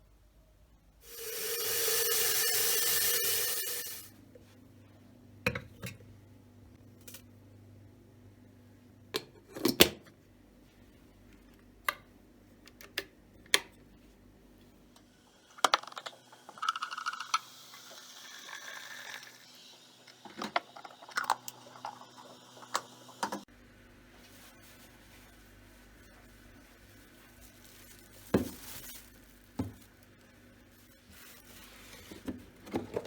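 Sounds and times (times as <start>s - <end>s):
rustling and scraping: 24.2s - 33.0s.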